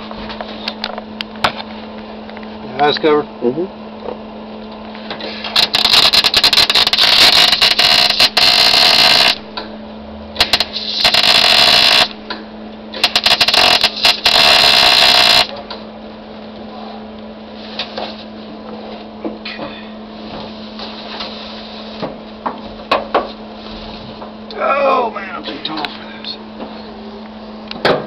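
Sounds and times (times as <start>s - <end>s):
welding arc crackling: 5.4s - 9.7s, 10.4s - 12.3s, 12.9s - 15.6s.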